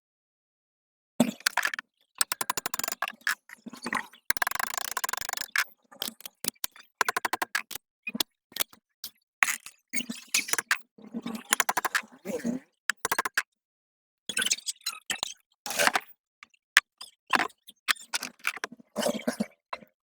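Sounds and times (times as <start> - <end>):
tools and parts rattling: 1.5 - 3.4, 4.3 - 7.8, 11.6 - 12.0.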